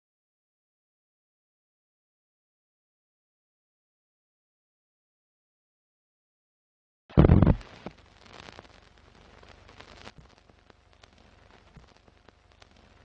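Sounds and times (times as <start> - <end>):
loud boom-like hit: 7.1 - 7.6
faint crackling with clicks: 7.2 - 13.0.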